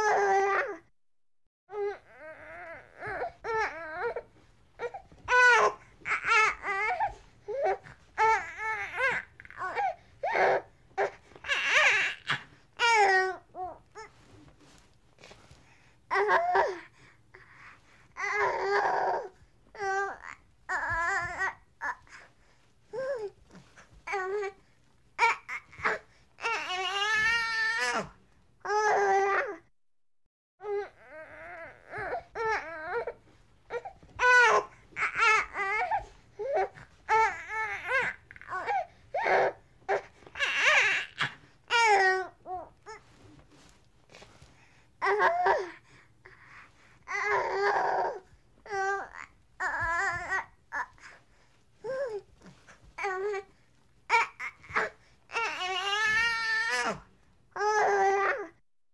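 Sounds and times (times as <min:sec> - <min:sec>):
baby crying: 0:00.0 - 0:00.8, 0:04.8 - 0:14.1, 0:18.2 - 0:22.2, 0:25.2 - 0:29.6, 0:30.6 - 0:43.0, 0:47.1 - 0:51.2, 0:54.1 - 0:57.0, 0:57.6 - 0:58.6.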